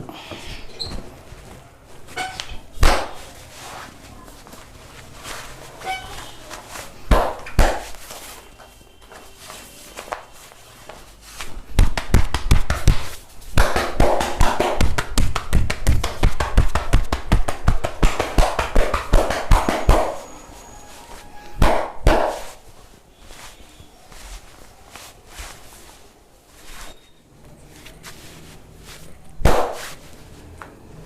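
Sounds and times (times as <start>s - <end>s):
hands slapping body: 2.8s - 3.3s, 7.1s - 8.0s, 11.4s - 20.2s, 21.6s - 22.6s, 29.4s - 30.0s.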